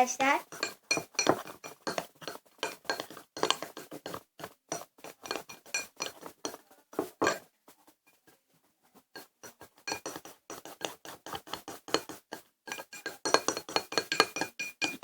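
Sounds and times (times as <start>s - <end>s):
spoon stirring slime in bowl: 0.0s - 7.4s, 9.2s - 15.0s
spoon clinking against bowl: 0.5s - 6.6s, 7.2s - 7.4s, 9.9s - 15.0s.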